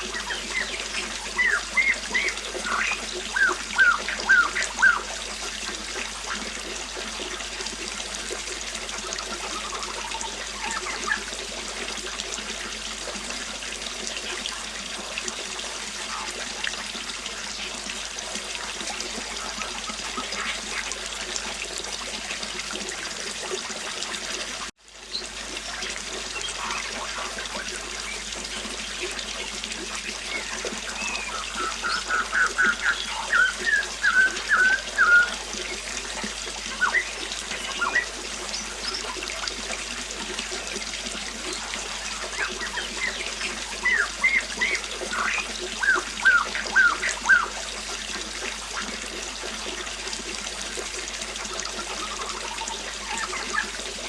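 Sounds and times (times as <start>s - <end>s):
songbird chirping: 0.0s - 5.1s, 30.1s - 35.8s, 36.7s - 39.1s, 42.2s - 47.5s
river flowing: 0.0s - 6.4s, 25.1s - 54.0s.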